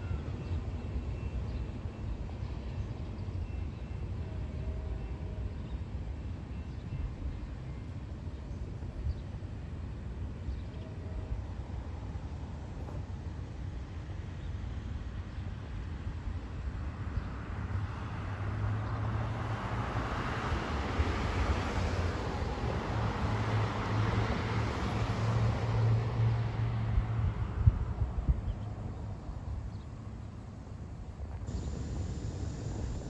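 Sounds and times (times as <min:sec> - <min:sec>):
low engine hum: 0:08.2 - 0:33.0
rushing noise: 0:31.5 - 0:33.0.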